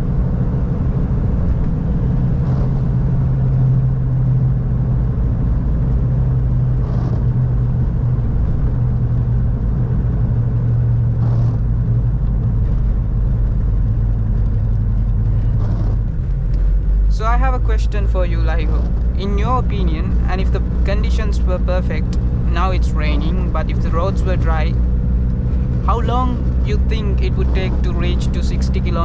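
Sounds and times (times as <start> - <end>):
diesel engine droning: 0.0 - 29.0.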